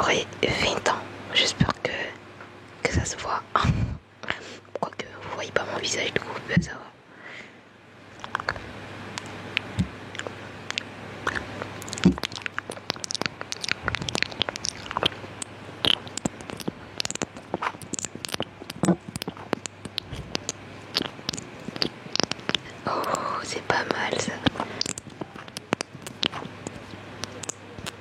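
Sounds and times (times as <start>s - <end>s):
wet lip and tongue clicks: 8.2s - 8.6s, 9.2s - 28.0s.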